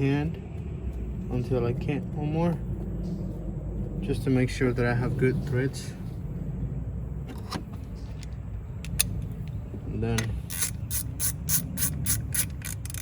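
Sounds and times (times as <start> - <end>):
steady low hum: 0.0 - 13.0
hand ratchet clicking: 10.2 - 13.0.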